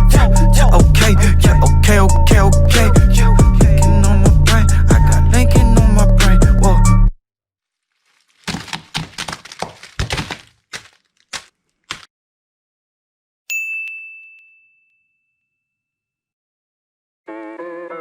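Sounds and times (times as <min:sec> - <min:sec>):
music: 0:00.0 - 0:07.2, 0:17.3 - 0:18.0
bell-like ding: 0:13.5 - 0:15.8.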